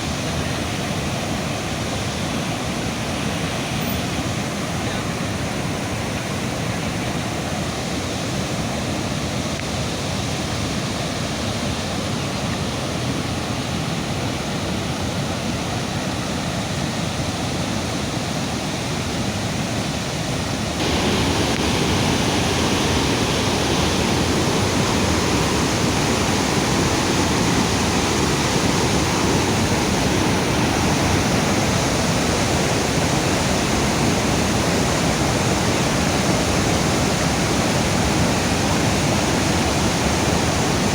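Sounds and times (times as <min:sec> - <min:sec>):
floodwater rushing: 0:00.0 - 0:40.9.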